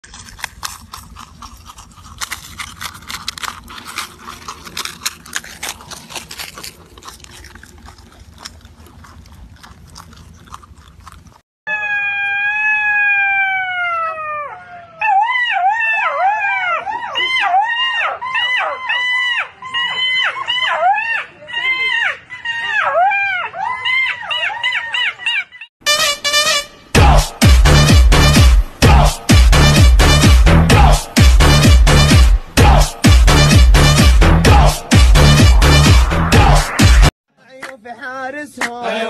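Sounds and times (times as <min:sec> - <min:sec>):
dog howling: 0:11.7 - 0:25.6.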